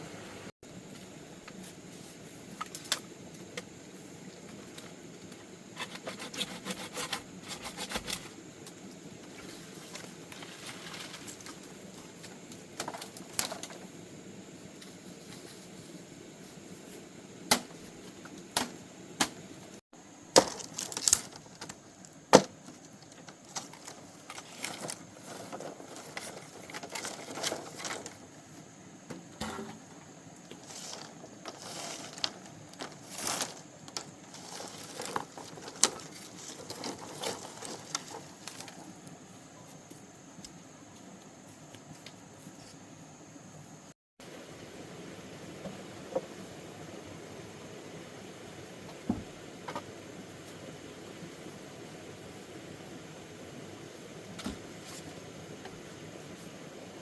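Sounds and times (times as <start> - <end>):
bamboo being cut and split: 5.8 - 8.4.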